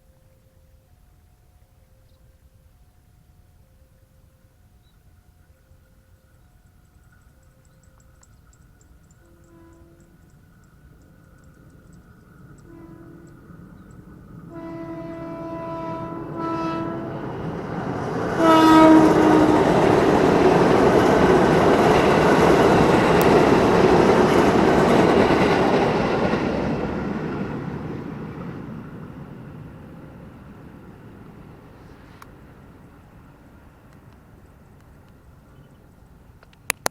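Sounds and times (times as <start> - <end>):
train rushing past: 8.4 - 36.4
train horn blasts: 9.2 - 10.5, 12.6 - 25.5.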